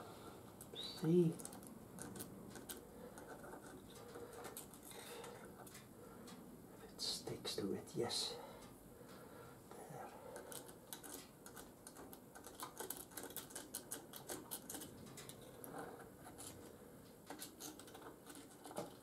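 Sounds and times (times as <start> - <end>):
small metal parts clicking: 1.4 - 5.9, 10.4 - 16.7, 17.3 - 19.0.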